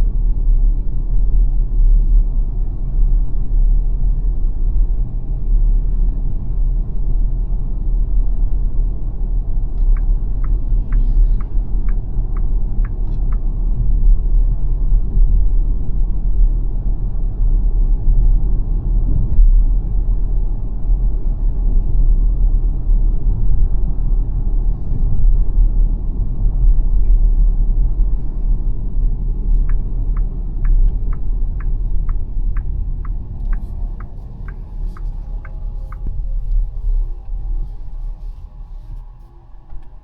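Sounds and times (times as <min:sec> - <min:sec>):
road and tyre rumble: 0:00.0 - 0:40.0
turn signal ticking: 0:09.7 - 0:13.6, 0:29.6 - 0:39.1.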